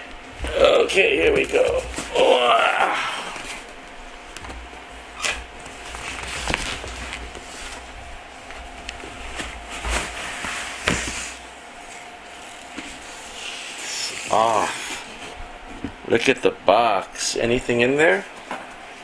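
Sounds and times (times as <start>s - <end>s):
faint steady hum: 0.0s - 19.0s
packaging rustling: 3.2s - 14.4s.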